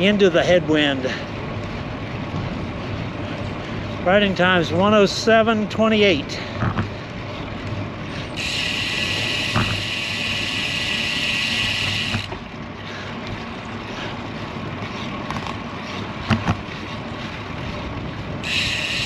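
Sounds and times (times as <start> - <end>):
wind and road noise: 0.0 - 19.0
bicycle freehub ratcheting: 6.2 - 12.4, 18.4 - 19.0.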